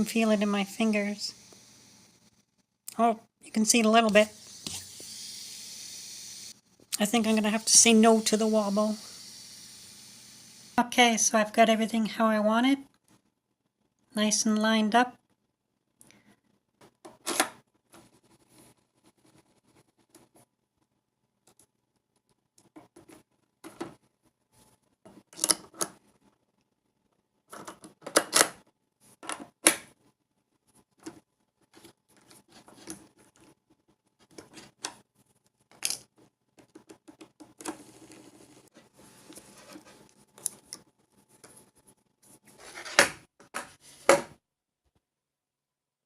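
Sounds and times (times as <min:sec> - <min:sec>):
soft scraping: 0:37.8 - 0:40.1.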